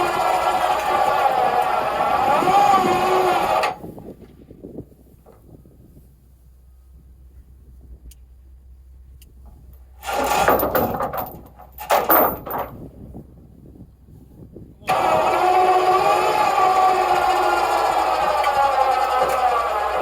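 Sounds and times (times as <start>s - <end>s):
engine starting and running: 0.0s - 4.2s, 8.1s - 12.9s, 14.9s - 20.0s.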